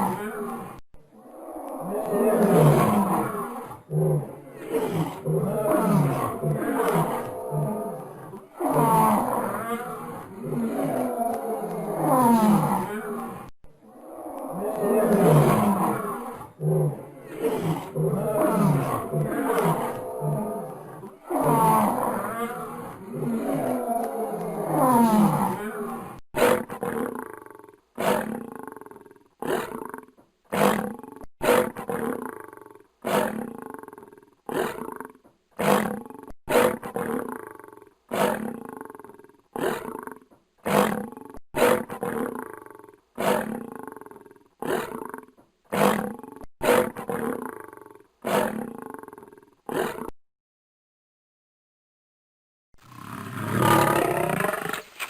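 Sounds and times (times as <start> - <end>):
lion grunting roars: 0.0 - 37.4, 52.9 - 54.9
lion roaring: 0.0 - 50.1, 52.8 - 54.9.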